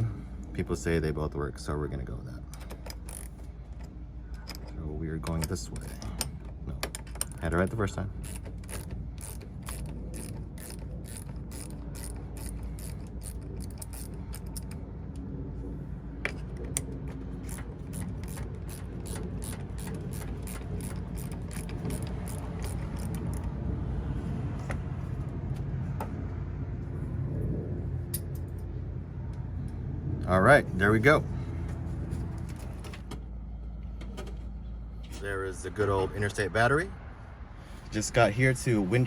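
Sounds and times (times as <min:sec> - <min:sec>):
steady low hum: 0:00.0 - 0:39.0
ratcheting wrench clicking: 0:02.5 - 0:14.8, 0:16.3 - 0:23.6.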